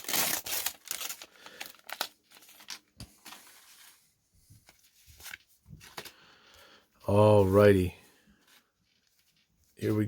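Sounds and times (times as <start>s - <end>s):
wax paper wrapper tearing: 0.0s - 2.8s.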